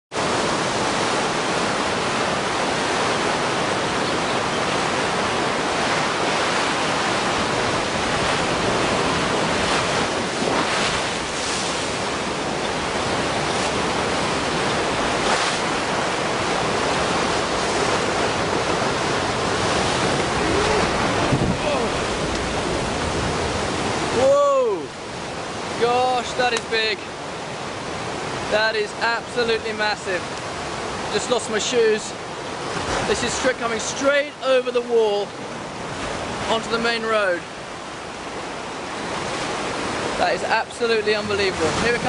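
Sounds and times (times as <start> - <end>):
surging seawater roar: 0.1 - 42.0.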